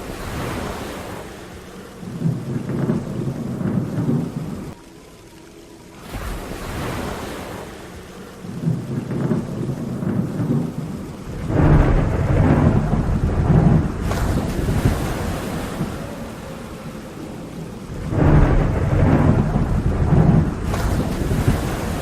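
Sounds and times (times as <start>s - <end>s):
steady rain: 0.0s - 22.0s
thunder rolling: 2.0s - 4.8s, 8.4s - 22.0s.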